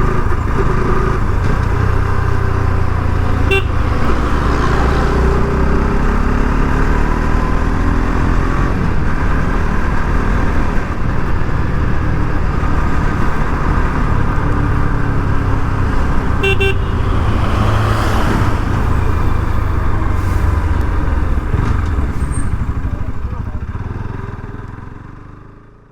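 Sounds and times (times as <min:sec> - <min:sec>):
wind and road rush: 0:00.0 - 0:25.7
motorcycle engine running: 0:00.0 - 0:25.9
vehicle horn beep: 0:03.2 - 0:04.8, 0:16.3 - 0:17.7.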